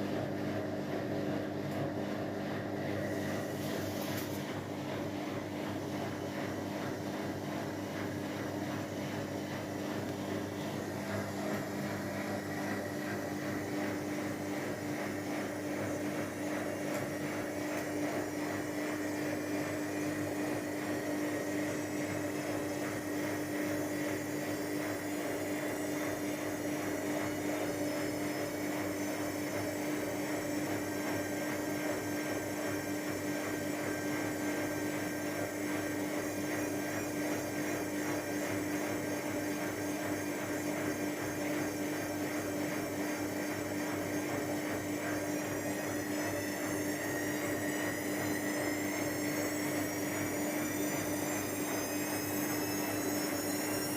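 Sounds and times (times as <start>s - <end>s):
washing machine spinning: 0.0s - 53.9s.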